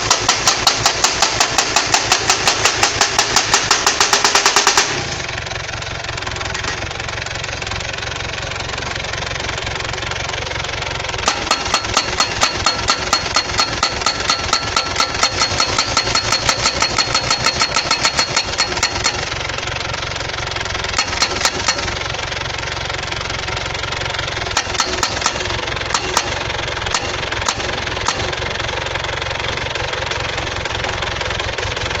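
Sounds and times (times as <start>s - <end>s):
rapid hammer blows: 0.0s - 5.1s, 11.2s - 19.3s, 21.0s - 21.9s, 24.6s - 28.3s
pile driver engine running: 0.0s - 32.0s.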